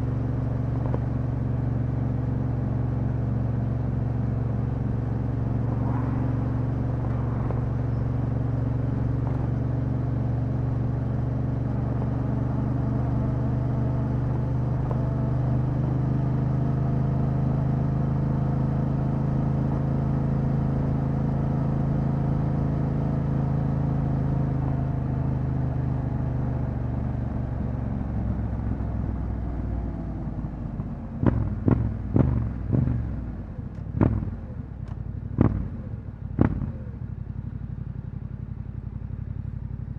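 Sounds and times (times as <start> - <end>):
motorcycle engine cruising: 0.0 - 39.9.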